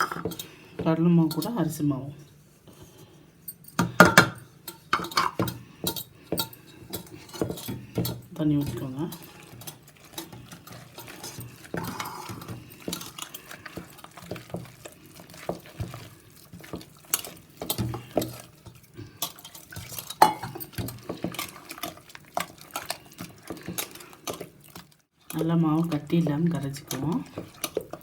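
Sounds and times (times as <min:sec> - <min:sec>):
spoon stirring batter in bowl: 0:00.0 - 0:28.0
spoon clinking against bowl: 0:19.2 - 0:20.8.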